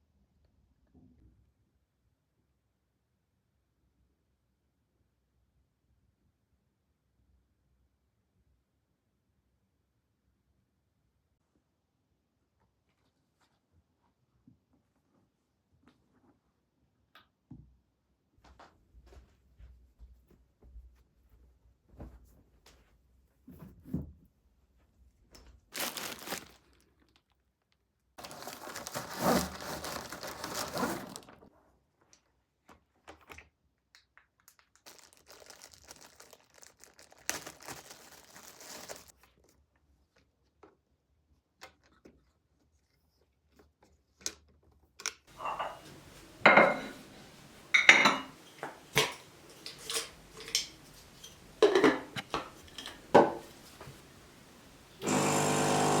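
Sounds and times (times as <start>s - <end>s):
rustling: 25.7s - 27.2s, 28.2s - 31.5s, 34.8s - 39.1s, 45.3s - 55.0s.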